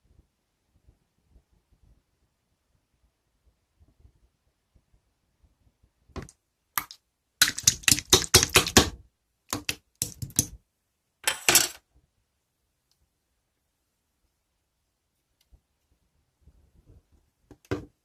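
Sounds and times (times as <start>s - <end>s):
slime clicking and popping: 6.8s - 10.6s.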